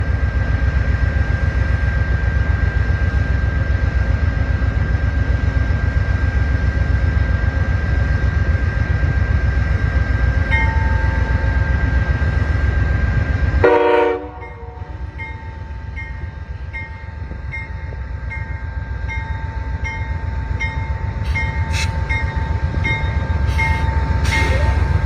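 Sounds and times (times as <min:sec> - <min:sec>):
diesel train rumble: 0:00.0 - 0:25.0
high-pitched whine: 0:21.2 - 0:25.0.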